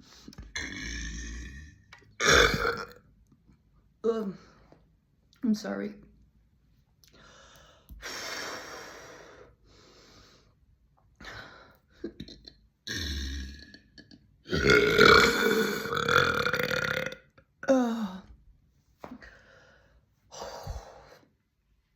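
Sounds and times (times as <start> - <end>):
woman burping: 0.5 - 3.0, 12.1 - 18.1.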